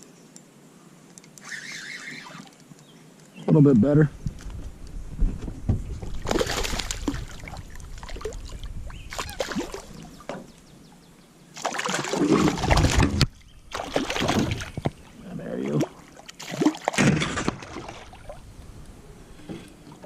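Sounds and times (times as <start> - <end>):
water splashing: 6.0 - 10.4, 11.6 - 18.5.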